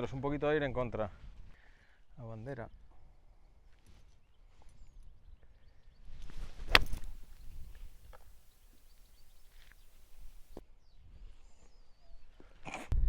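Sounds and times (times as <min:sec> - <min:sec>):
club striking ball click: 0:06.7 - 0:10.6
golf club whoosh: 0:06.7 - 0:10.6.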